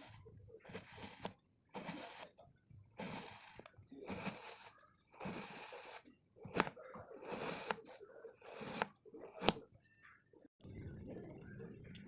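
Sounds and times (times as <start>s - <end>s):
comb scraping sand: 0.0s - 9.6s.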